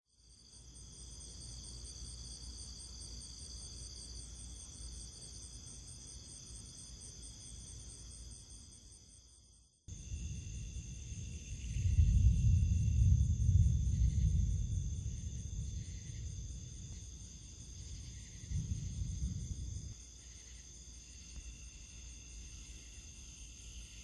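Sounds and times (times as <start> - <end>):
insects trilling: 0.2 - 24.0
low rumble: 9.9 - 20.0.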